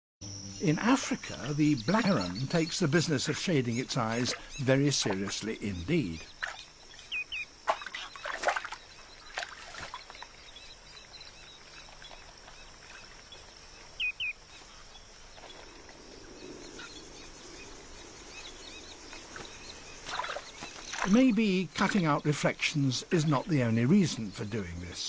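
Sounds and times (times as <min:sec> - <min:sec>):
steady high hiss: 0:00.2 - 0:07.6
bird chirps: 0:00.2 - 0:25.0.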